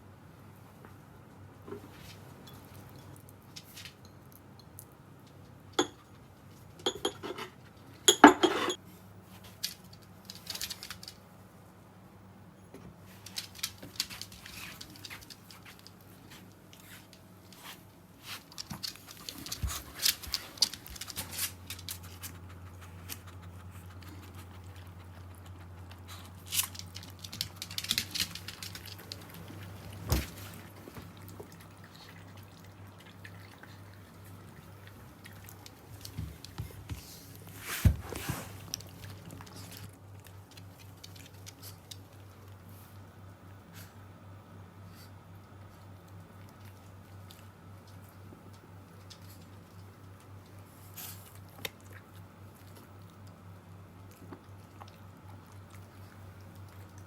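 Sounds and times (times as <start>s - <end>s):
low steady hum: 0.0s - 57.0s
dog eating with wet smacking: 18.3s - 37.5s, 38.3s - 43.6s, 45.3s - 57.0s.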